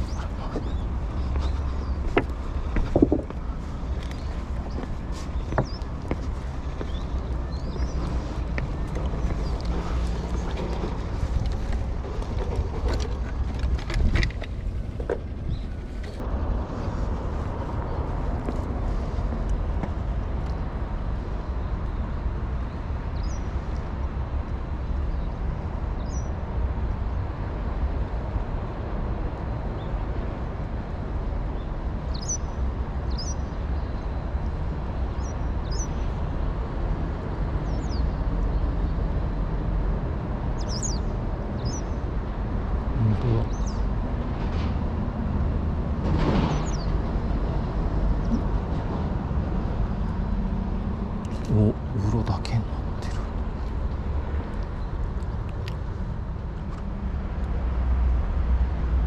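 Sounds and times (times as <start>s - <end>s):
small birds chirping: 0.0s - 13.8s, 14.4s - 16.2s, 32.1s - 34.2s, 35.1s - 36.2s, 40.6s - 42.1s, 43.0s - 43.9s, 46.5s - 46.9s
low outdoor rumble: 0.0s - 59.0s.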